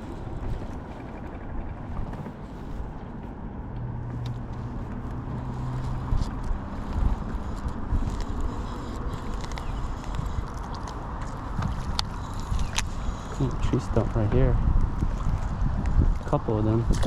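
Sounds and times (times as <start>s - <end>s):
low steady hum: 0.0s - 17.0s
wind rumbling on microphone: 0.0s - 17.0s.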